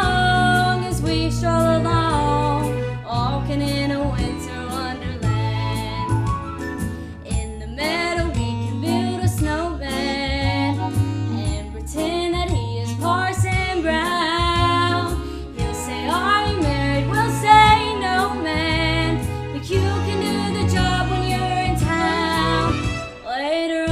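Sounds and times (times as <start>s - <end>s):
steady bass line: 0.0s - 23.1s
instrumental accompaniment: 0.0s - 23.9s
person singing with vibrato: 7.3s - 23.9s.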